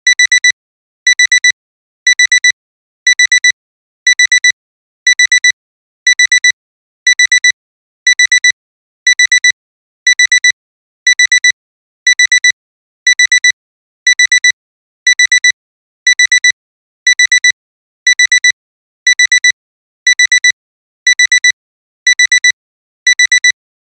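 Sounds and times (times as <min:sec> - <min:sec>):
digital alarm clock beeping: 0:00.1 - 0:00.5, 0:01.1 - 0:01.5, 0:02.1 - 0:02.5, 0:03.1 - 0:03.5, 0:04.1 - 0:04.5, 0:05.1 - 0:05.5, 0:06.1 - 0:06.5, 0:07.1 - 0:07.5, 0:08.1 - 0:08.5, 0:09.1 - 0:09.5, 0:10.1 - 0:10.5, 0:11.1 - 0:11.5, 0:12.1 - 0:12.5, 0:13.2 - 0:13.5, 0:14.2 - 0:14.5, 0:15.2 - 0:15.5, 0:16.2 - 0:16.5, 0:17.2 - 0:17.5, 0:18.2 - 0:18.5, 0:19.2 - 0:19.5, 0:20.2 - 0:20.5, 0:21.2 - 0:21.5, 0:22.2 - 0:23.6.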